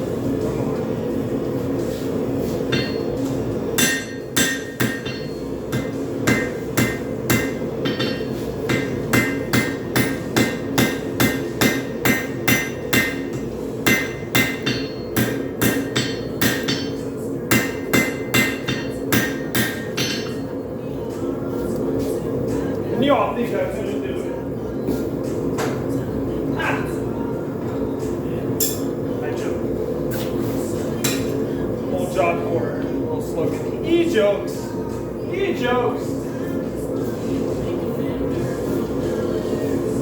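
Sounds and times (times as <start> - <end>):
hammer ringing on anvil: 2.7 - 3.2, 3.8 - 20.5.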